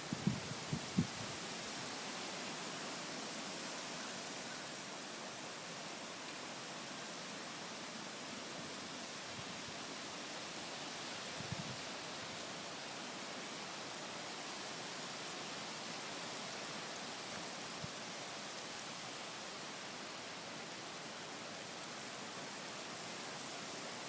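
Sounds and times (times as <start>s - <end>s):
light rain: 0.0s - 24.0s
wind: 0.0s - 24.0s
wind buffeting microphone: 0.1s - 1.3s.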